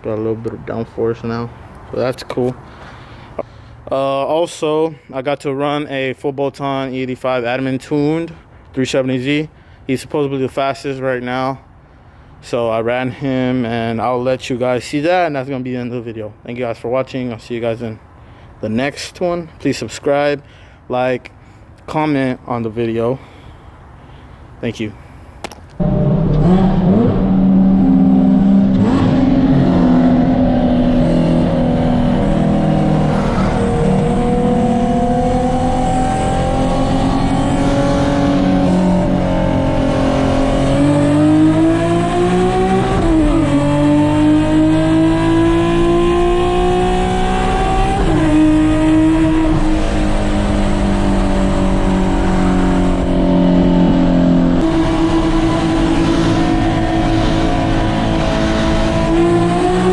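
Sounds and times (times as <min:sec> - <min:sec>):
car engine at full throttle: 0:25.8 - 0:59.9.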